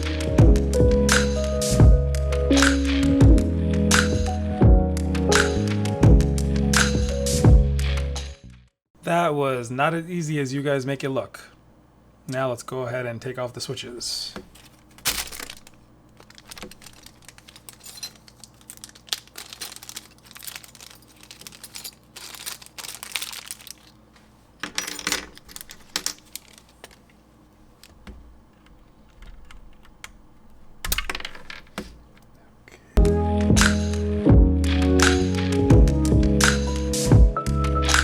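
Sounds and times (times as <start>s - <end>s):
background music: 0.0s - 8.6s, 33.0s - 38.0s.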